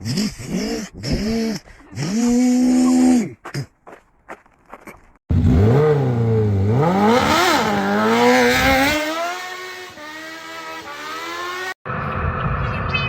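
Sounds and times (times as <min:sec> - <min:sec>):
engine revving: 0:05.3 - 0:12.4.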